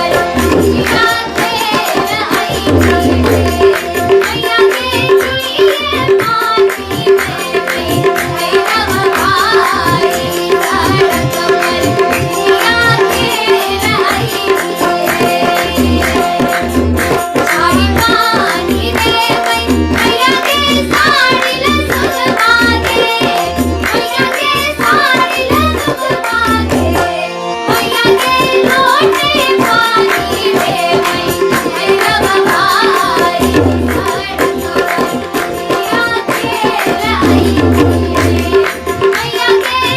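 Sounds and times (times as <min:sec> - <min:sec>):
tabla: 0:00.0 - 0:39.9.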